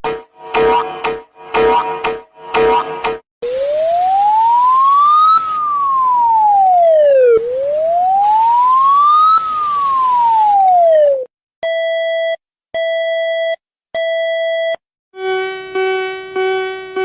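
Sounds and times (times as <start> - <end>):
siren wailing: 3.4 - 11.3.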